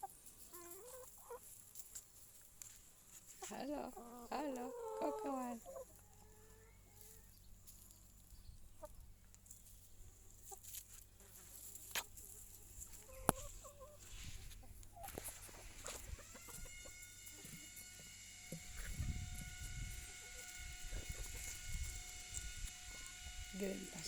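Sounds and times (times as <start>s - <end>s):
chickens clucking softly: 0.0s - 2.0s, 3.3s - 18.0s.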